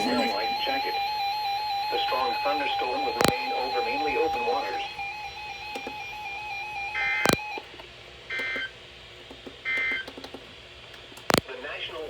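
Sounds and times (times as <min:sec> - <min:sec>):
warbling two-tone data bursts: 0:00.0 - 0:07.6.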